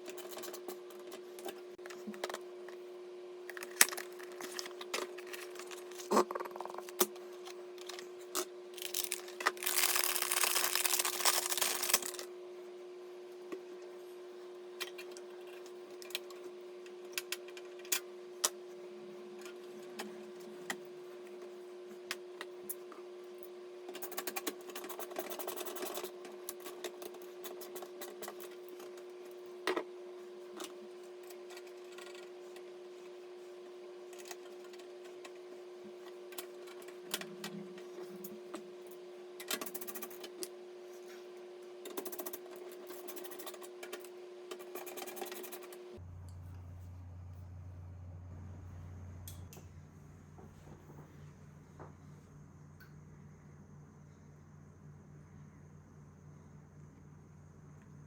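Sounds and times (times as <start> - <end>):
steady hum: 28.3 - 58.0.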